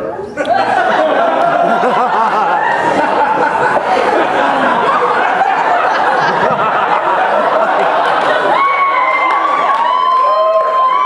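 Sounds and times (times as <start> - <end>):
audience laughing: 0.4 - 8.9.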